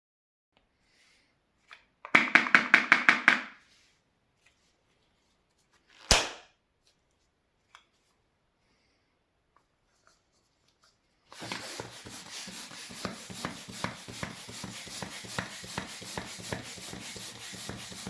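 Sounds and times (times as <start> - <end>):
balloon popping: 6.0 - 6.4.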